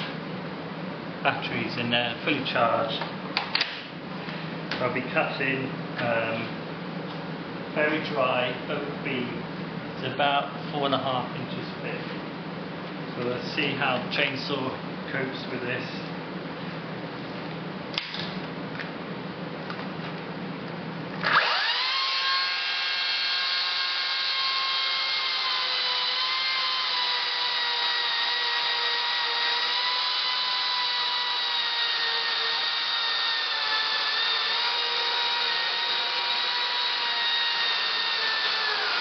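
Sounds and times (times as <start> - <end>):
cordless chainsaw cutting wood: 21.2 - 39.0.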